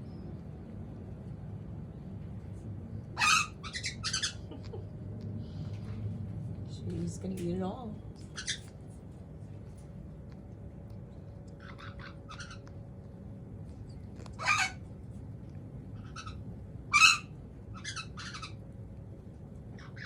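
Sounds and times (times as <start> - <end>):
cockatoo squawking: 3.2 - 4.6, 11.6 - 12.6, 14.3 - 14.8, 16.0 - 18.6.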